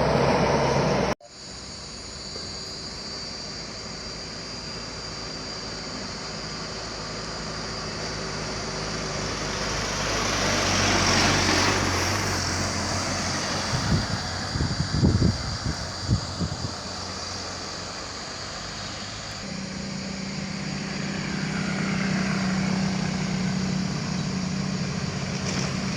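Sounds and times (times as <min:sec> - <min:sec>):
vehicle passing by: 0:00.0 - 0:01.2, 0:07.0 - 0:25.9
insects droning: 0:00.0 - 0:25.9.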